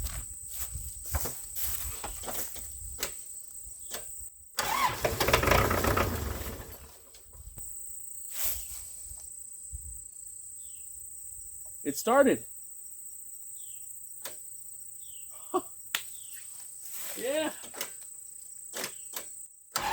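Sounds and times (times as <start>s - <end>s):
diesel engine cranking and starting: 4.6s - 7.4s.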